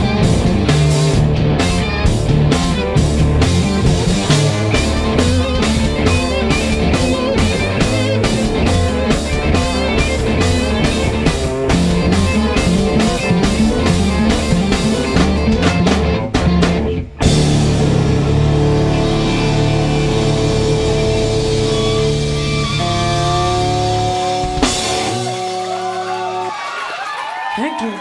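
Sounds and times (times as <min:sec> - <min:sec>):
bass line: 0:00.0 - 0:26.5
drum kit beat: 0:00.0 - 0:26.5
electric guitar lines: 0:00.0 - 0:26.6.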